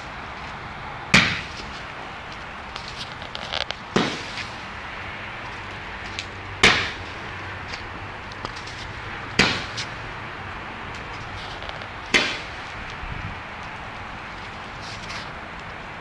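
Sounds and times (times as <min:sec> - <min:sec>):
loud firework bangs echoing: 0:03.9 - 0:04.4.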